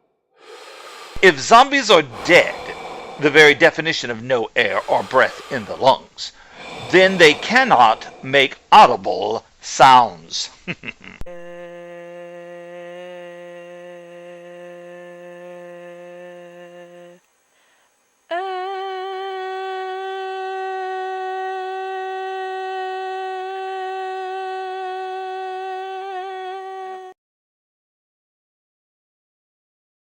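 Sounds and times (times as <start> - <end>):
person humming a note: 11.3 - 17.2, 18.3 - 27.2.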